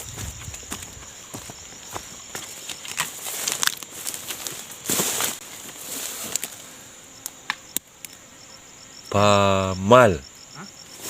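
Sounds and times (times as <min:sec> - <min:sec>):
insects buzzing high-pitched: 0:00.0 - 0:11.0
faint pulsing chirp: 0:06.7 - 0:11.0
man's drawn-out vocal sound: 0:09.1 - 0:10.7.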